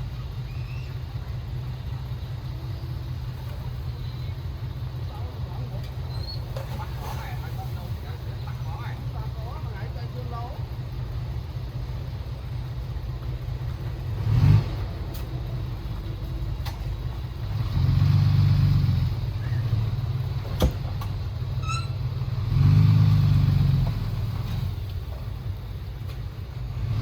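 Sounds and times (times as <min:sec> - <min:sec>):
heavy diesel engine running: 0:00.0 - 0:27.0.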